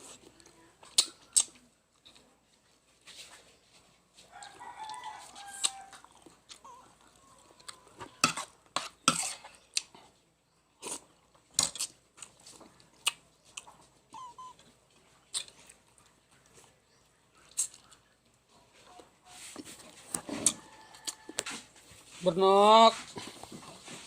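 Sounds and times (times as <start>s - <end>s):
chewing chicken bones: 4.3s - 8.2s, 10.8s - 18.2s
rooster crowing: 4.4s - 6.2s
faint chirp: 14.1s - 14.7s.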